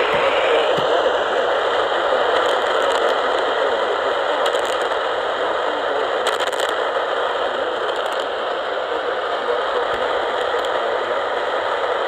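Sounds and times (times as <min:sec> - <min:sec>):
radio static hiss: 0:00.0 - 0:12.0
faint crackles: 0:01.8 - 0:03.5, 0:04.4 - 0:05.1.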